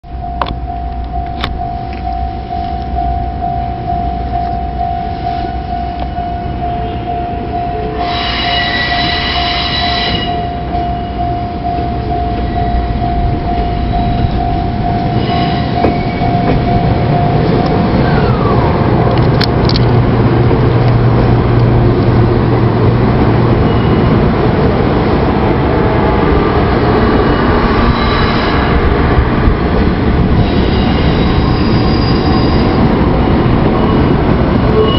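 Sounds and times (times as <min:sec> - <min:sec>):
level-crossing warning bell: 0:00.0 - 0:34.9
train rumble: 0:00.0 - 0:34.9
train horn: 0:06.8 - 0:10.7, 0:15.2 - 0:16.1.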